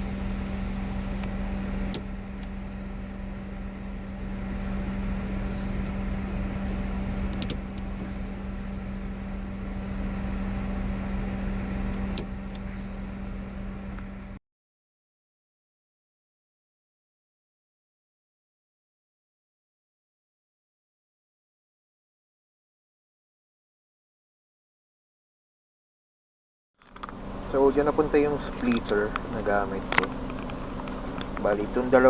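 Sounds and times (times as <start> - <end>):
low rumble inside car: 0.0 - 14.4, 26.9 - 32.0
steady low hum: 0.0 - 14.4, 26.9 - 32.0
handling clicks: 6.6 - 8.0, 27.9 - 31.8.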